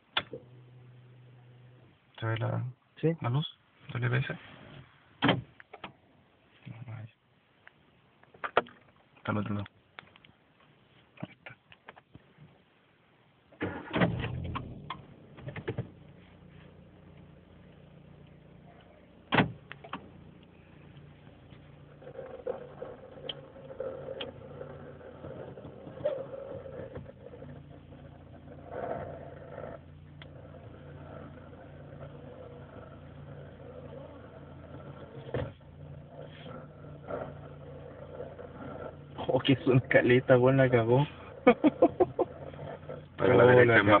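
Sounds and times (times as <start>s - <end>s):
car engine starting and idling: 13.5s - 44.0s.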